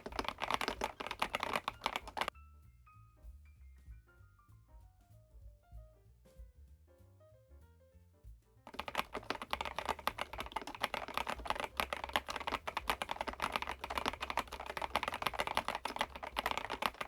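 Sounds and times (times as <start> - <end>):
mechanical keyboard typing: 0.0 - 2.3, 8.7 - 17.0.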